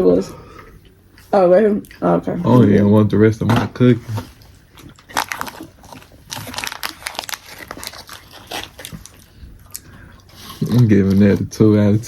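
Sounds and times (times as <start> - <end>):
snack bag crinkling: 4.8 - 11.5.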